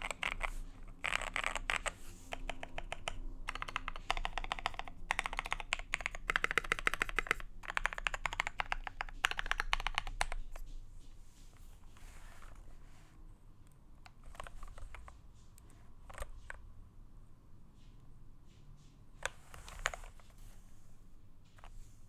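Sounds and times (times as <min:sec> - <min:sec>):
fast typing on mechanical keyboard: 0:00.0 - 0:10.7, 0:14.1 - 0:15.2, 0:16.0 - 0:16.6.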